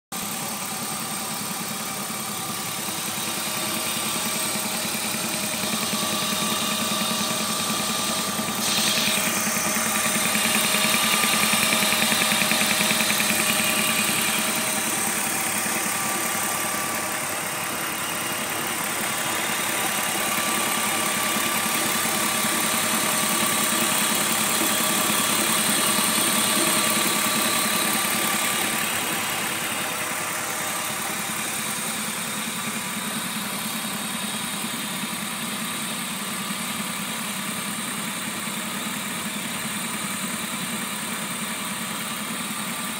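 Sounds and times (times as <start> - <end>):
car engine idling: 0.1 - 42.9.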